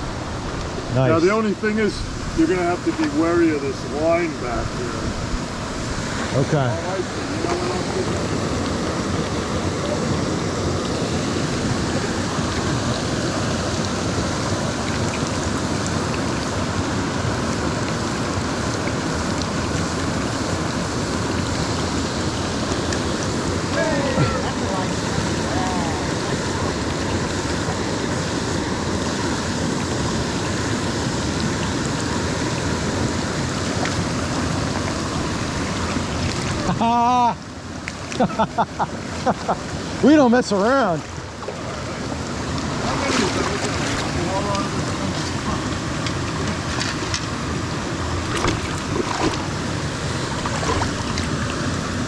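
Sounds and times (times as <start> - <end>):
stream water rushing over rocks: 0.0 - 52.0.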